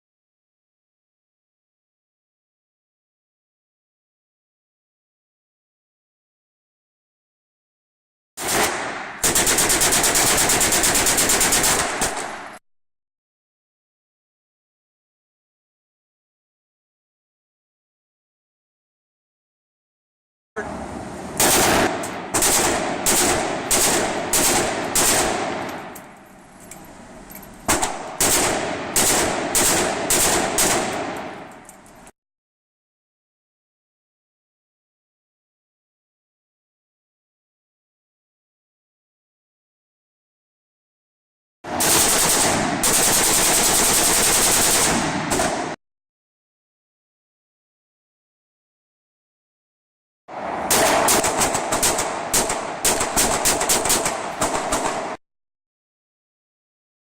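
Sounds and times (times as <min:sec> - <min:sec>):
automatic gunfire: 0:08.4 - 0:12.6, 0:21.4 - 0:26.0, 0:27.7 - 0:31.6, 0:41.7 - 0:45.8, 0:50.7 - 0:55.2
gunshots with ringing echo: 0:08.4 - 0:12.6, 0:21.4 - 0:31.6, 0:41.7 - 0:45.8, 0:50.7 - 0:55.2.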